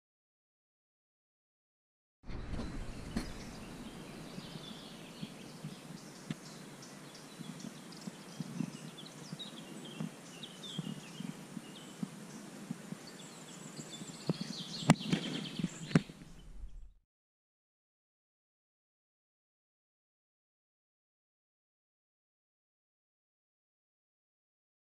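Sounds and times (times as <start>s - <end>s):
background hiss: 2.3s - 17.0s
small birds chirping: 2.3s - 17.0s.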